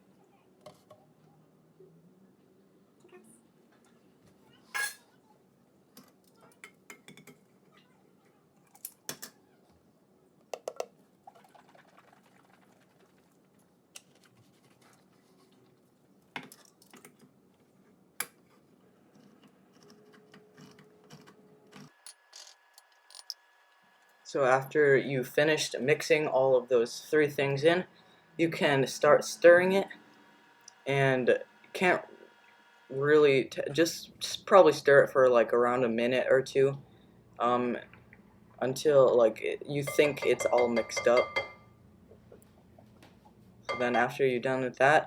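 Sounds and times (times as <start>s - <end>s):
kitchen utensils and dishes clinking: 4.7s - 5.1s, 39.8s - 41.7s.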